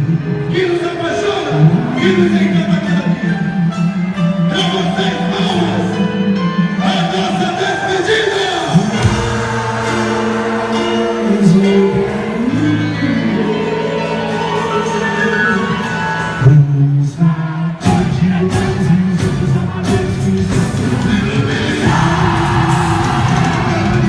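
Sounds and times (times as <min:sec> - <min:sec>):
amplified folk dance music with singing: 0:08.4 - 0:24.0.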